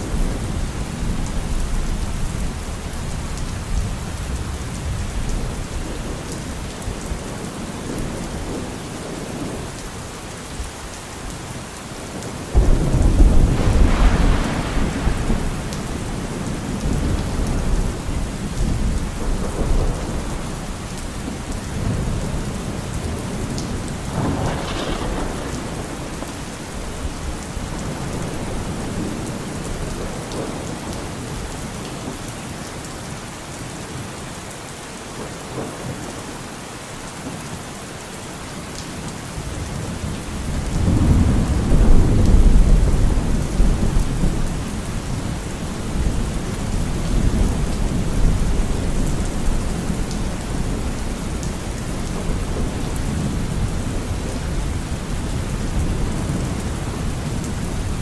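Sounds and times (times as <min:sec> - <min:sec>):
steady rain falling: 0:00.0 - 0:58.0
rolling thunder: 0:12.5 - 0:30.8, 0:39.8 - 0:58.0.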